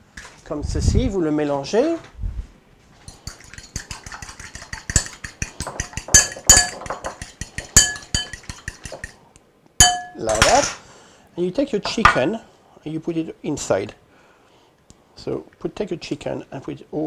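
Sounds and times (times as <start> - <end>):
utensil clinking against bowl: 3.1 - 9.2, 9.8 - 10.8.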